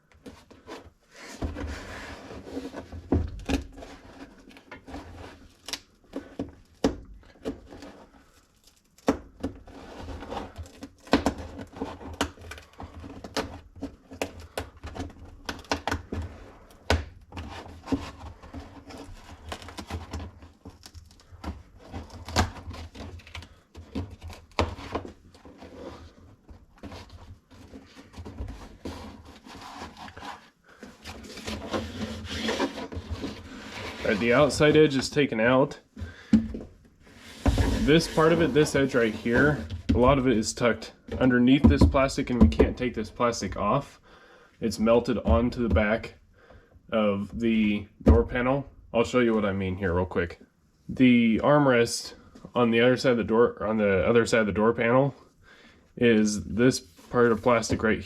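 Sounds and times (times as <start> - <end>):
vinyl being peeled: 0.2 - 35.2, 37.1 - 40.6.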